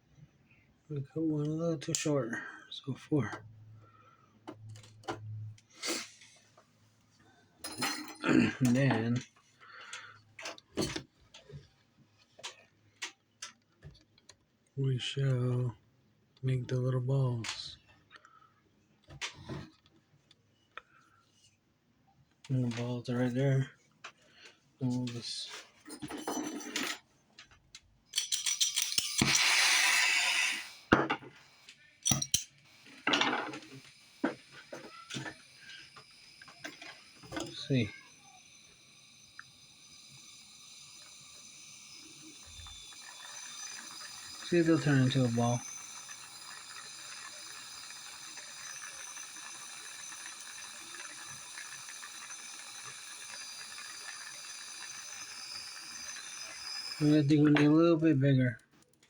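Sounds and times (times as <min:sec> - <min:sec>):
metal tools clinking: 0:07.6 - 0:09.0, 0:25.8 - 0:27.1, 0:28.1 - 0:29.6, 0:32.0 - 0:37.8
torch flame hissing: 0:29.0 - 0:31.5, 0:32.8 - 0:57.4.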